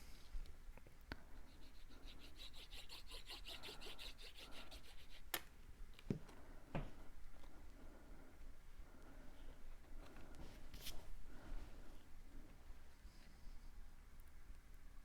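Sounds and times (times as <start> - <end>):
rhythmic rubbing on cardstock: 1.3 - 5.4.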